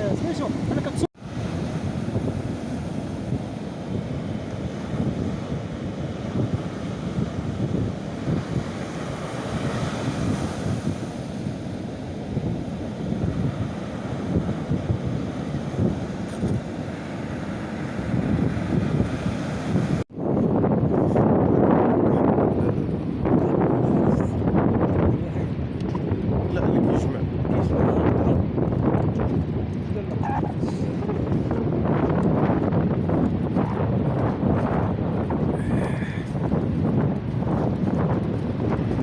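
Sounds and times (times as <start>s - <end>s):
sea waves washing: 0.0s - 21.4s
wind buffeting microphone: 0.0s - 39.0s.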